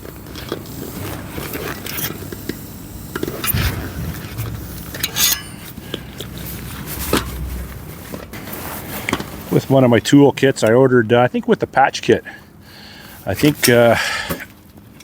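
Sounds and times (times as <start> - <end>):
tools clinking and scraping: 3.3 - 6.0.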